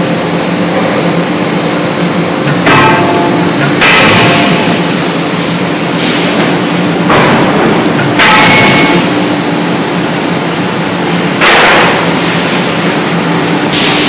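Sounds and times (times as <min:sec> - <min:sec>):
steady machine hum: 0:00.0 - 0:14.0.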